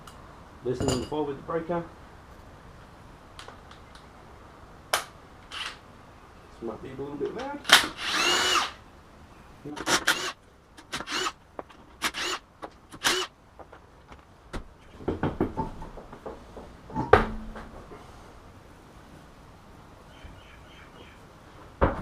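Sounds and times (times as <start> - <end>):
impact driver whining and hammering: 9.8 - 11.4, 12.0 - 13.3
low clunks and knocks: 14.5 - 18.0.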